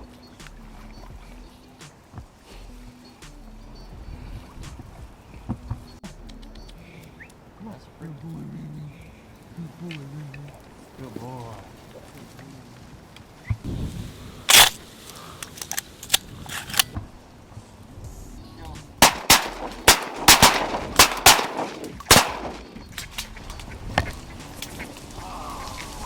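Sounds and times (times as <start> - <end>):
shotgun shots: 14.5 - 14.8, 19.0 - 23.0.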